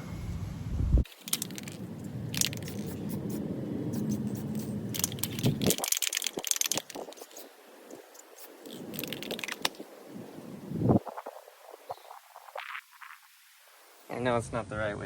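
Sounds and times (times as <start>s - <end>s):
low steady rumble: 0.0s - 5.8s
spray paint can rattling: 1.0s - 9.9s.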